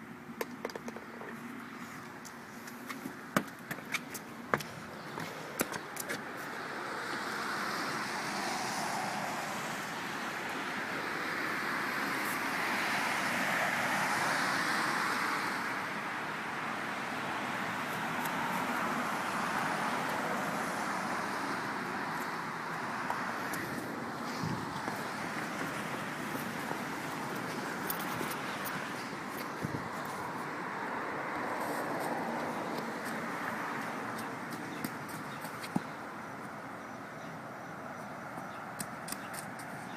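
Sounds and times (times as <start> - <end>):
tyres hissing on wet road: 6.6 - 16.1.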